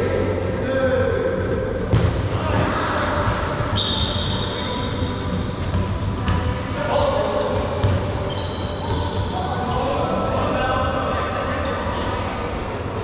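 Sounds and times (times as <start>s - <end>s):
players' voices: 0.0s - 13.0s
sneakers squeaking on court: 1.4s - 9.7s.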